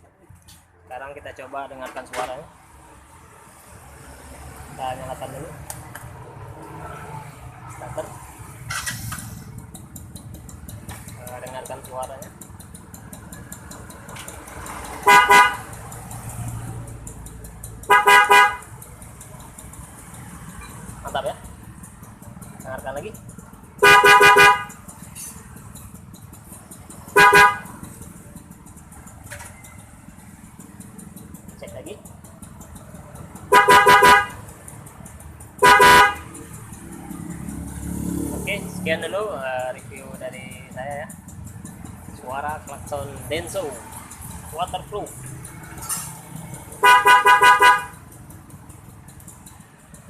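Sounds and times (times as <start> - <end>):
motorcycle engine idling: 7.5 - 50.0
motorcycle horn blasts: 15.0 - 15.7, 17.9 - 18.7, 23.8 - 24.8, 27.1 - 27.8, 33.5 - 34.4, 35.6 - 36.4, 46.8 - 48.0.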